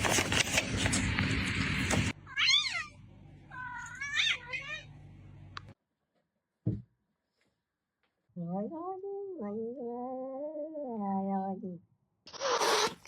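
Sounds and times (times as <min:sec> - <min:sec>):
cat meowing: 0:02.3 - 0:04.9.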